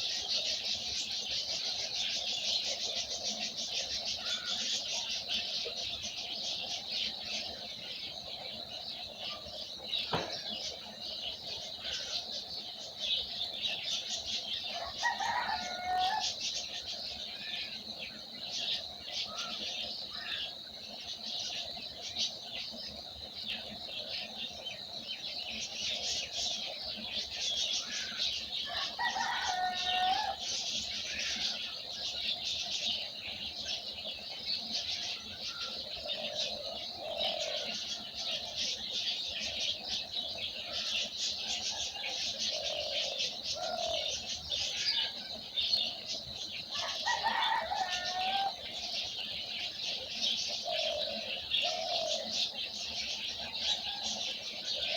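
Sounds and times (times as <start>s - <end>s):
small birds chirping: 0.0s - 54.9s
low falling bird call: 10.0s - 10.8s.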